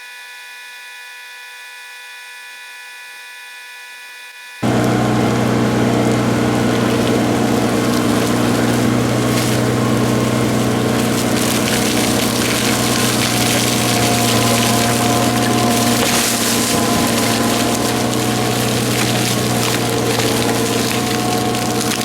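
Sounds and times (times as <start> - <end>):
bulldozer diesel engine drone: 4.6 - 22.0.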